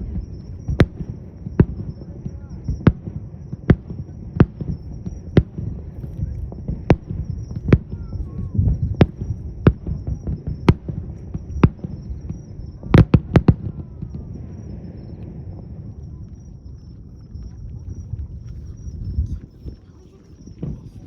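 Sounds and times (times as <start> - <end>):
fireworks bangs: 0.0 - 21.0.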